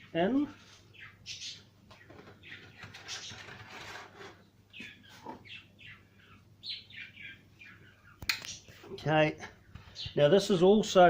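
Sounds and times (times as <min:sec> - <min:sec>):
small bird chirping: 0:00.1 - 0:09.0
scraping handling noise: 0:02.0 - 0:05.5.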